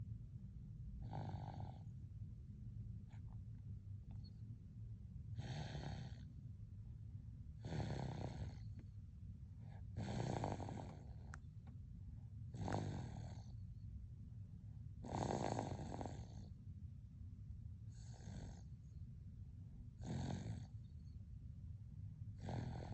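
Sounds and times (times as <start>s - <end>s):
steady low hum: 0.0s - 22.9s
baby snoring: 1.0s - 1.9s, 5.4s - 6.3s, 7.6s - 8.8s, 9.9s - 11.2s, 12.5s - 13.6s, 15.0s - 16.6s, 18.0s - 18.7s, 20.0s - 20.8s, 22.4s - 22.9s.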